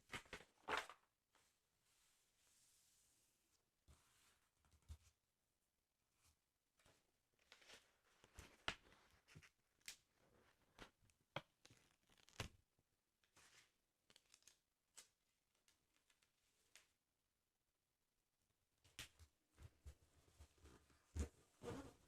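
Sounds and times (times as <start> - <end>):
fingers handling album pages: 0.1 - 1.0, 6.8 - 12.6, 13.3 - 16.8.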